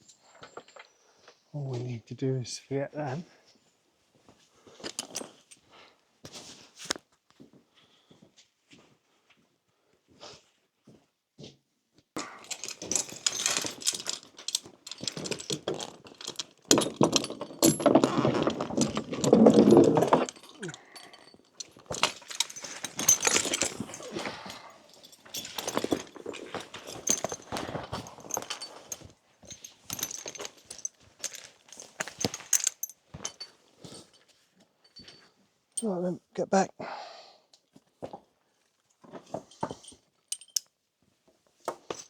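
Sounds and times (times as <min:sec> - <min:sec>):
metal harness buckles jingling: 0:04.7 - 0:05.7, 0:12.2 - 0:36.0, 0:39.3 - 0:40.8.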